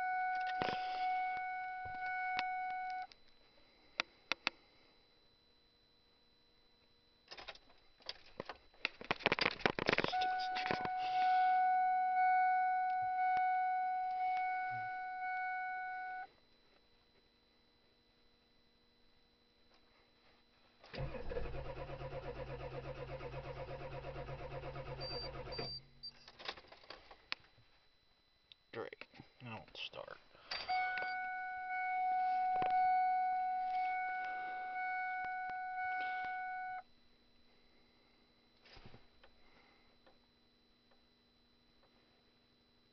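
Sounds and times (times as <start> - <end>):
car warning chime: 0.0 - 3.1, 10.2 - 16.3, 30.6 - 36.8.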